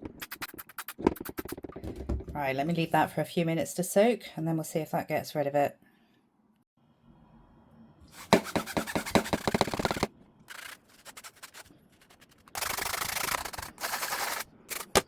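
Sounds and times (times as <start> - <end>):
brush scrubbing a hard surface: 8.2 - 15.0.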